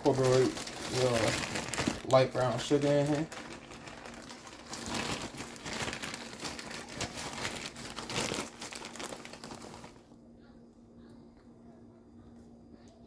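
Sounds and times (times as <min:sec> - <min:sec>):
plastic bag crinkling: 0:00.0 - 0:10.2.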